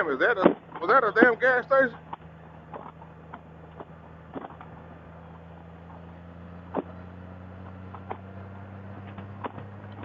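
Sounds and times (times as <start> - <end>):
motorcycle engine idling: 0.0 - 10.0.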